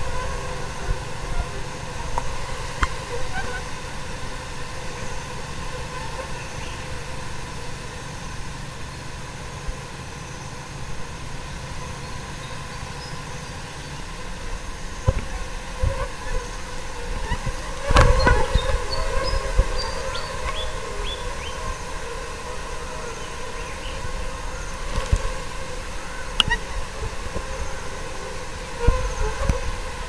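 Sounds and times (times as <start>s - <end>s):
flies buzzing: 0.0s - 30.0s
flies bumping microphone clicks: 17.2s - 20.8s, 24.8s - 25.7s, 26.3s - 27.6s.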